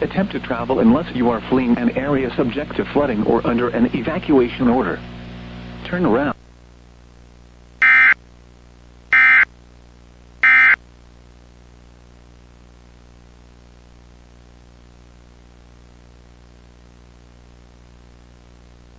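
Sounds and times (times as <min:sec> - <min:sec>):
faint steady hum: 0:00.0 - 0:18.9
two-tone digital data bursts: 0:07.8 - 0:08.2, 0:09.2 - 0:09.5, 0:10.4 - 0:10.8.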